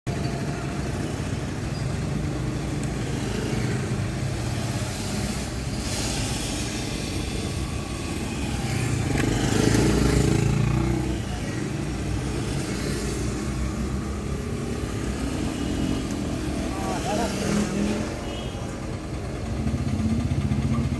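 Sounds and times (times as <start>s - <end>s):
traffic engine rumble: 0.0s - 20.9s
vehicle passing loudly: 3.0s - 18.4s.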